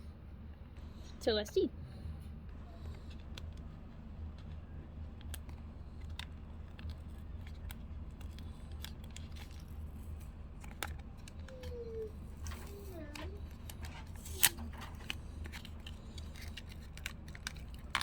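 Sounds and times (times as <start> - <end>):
steady low hum: 0.0 - 18.0
cardboard box clicks and crinkles: 5.0 - 11.5, 12.4 - 18.0.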